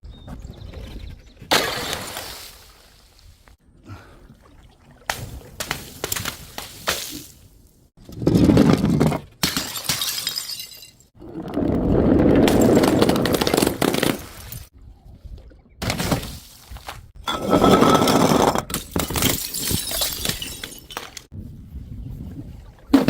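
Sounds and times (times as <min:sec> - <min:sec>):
glass bottles smashing: 0:09.4 - 0:11.1, 0:17.3 - 0:21.3.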